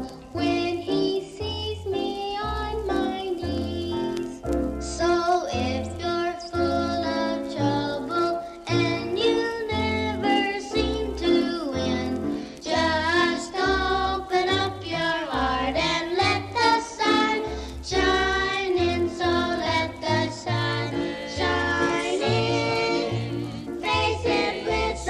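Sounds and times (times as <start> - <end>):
bouncy band accompaniment: 0.0 - 25.0
children singing in unison: 0.0 - 25.0.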